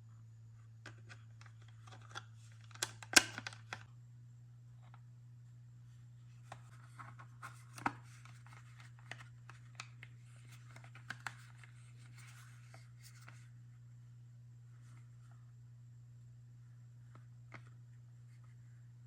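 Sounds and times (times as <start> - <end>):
steady low electrical hum: 0.0 - 19.0.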